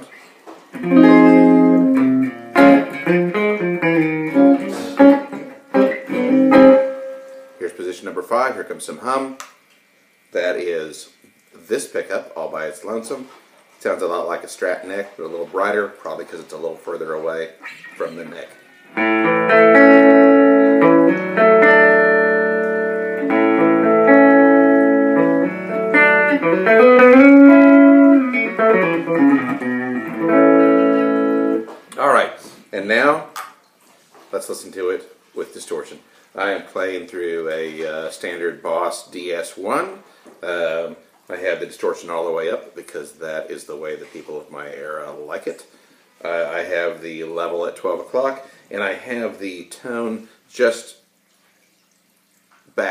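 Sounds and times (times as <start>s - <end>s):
clean electric guitar: 0.7s - 7.7s, 17.6s - 31.9s.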